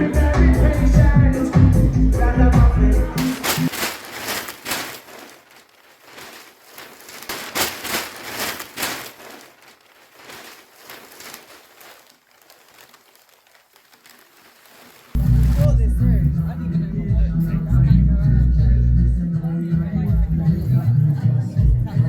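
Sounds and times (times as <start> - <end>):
paper rustling and crinkling: 3.2 - 16.2.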